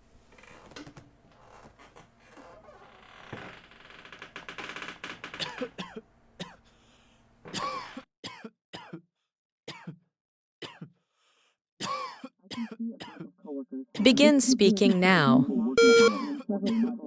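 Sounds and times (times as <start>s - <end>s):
person coughing: 7.5s - 9.1s, 9.7s - 10.0s, 10.6s - 11.0s, 11.8s - 13.4s, 16.1s - 17.0s.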